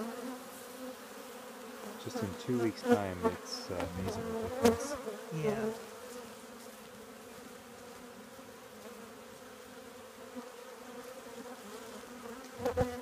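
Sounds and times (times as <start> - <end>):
honeybee colony buzzing: 0.0 - 13.0.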